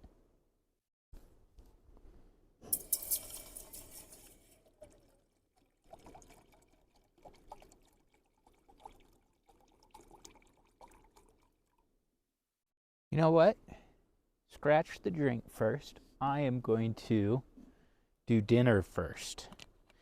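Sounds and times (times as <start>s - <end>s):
water pouring into a pot: 2.7s - 11.8s
short water splashes: 2.9s - 11.5s.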